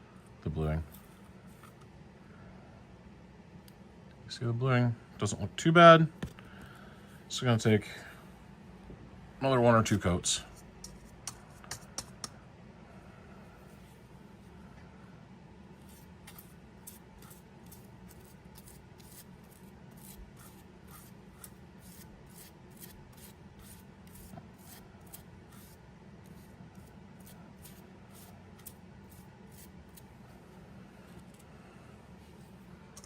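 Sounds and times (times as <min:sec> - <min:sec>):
scratchy rubbing strokes on steel: 0:15.8 - 0:30.2.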